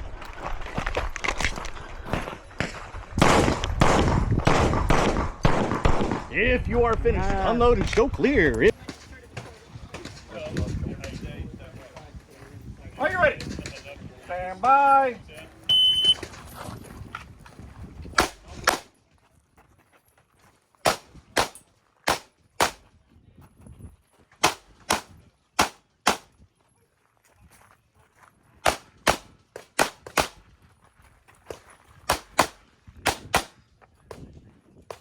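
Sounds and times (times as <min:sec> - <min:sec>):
pistol shots: 0:03.2 - 0:06.3, 0:20.8 - 0:22.8, 0:24.4 - 0:26.3, 0:28.6 - 0:30.4, 0:32.1 - 0:33.6.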